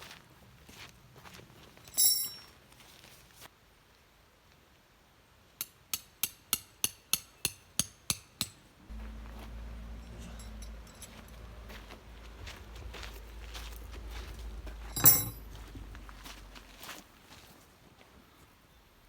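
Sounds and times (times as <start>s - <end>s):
hammer striking metal peg: 5.6s - 8.6s, 14.9s - 15.4s
low steady hum: 8.8s - 16.9s.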